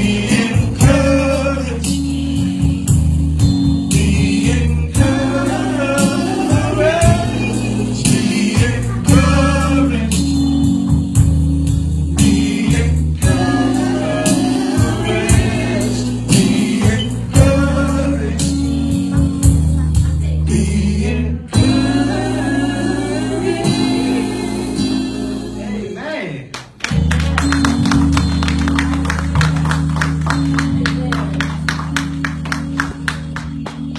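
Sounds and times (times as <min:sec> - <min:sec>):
backing voices singing: 0:00.0 - 0:02.8, 0:03.9 - 0:10.6, 0:12.1 - 0:19.0, 0:20.2 - 0:26.1
band playing bass drums guitar: 0:00.0 - 0:20.8, 0:21.6 - 0:25.6, 0:26.9 - 0:33.9
man singing lead: 0:03.9 - 0:10.5, 0:12.2 - 0:18.7.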